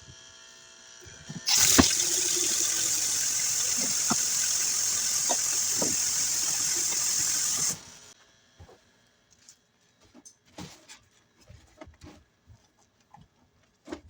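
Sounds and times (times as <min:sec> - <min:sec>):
tap water running: 0:01.5 - 0:08.2.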